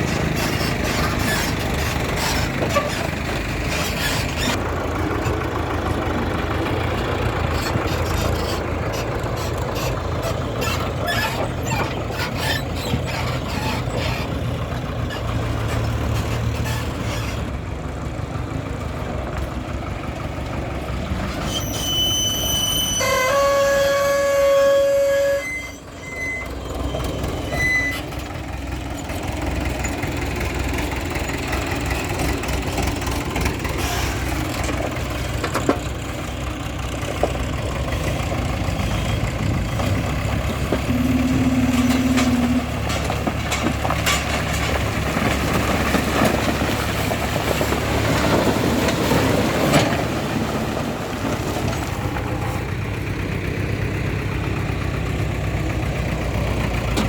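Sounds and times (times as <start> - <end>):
heavy diesel engines running: 0.0 - 57.0
metal clanks: 40.7 - 45.4
short steady tone: 40.9 - 42.9.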